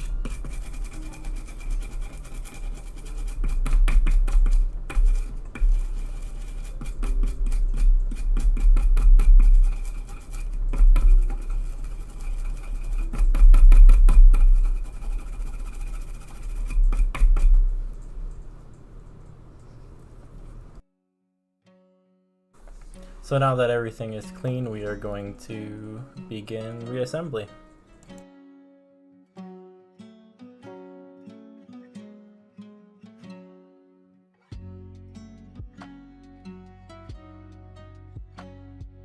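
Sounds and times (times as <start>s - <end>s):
brush scrubbing circuit board: 0.0s - 20.8s, 22.6s - 28.2s.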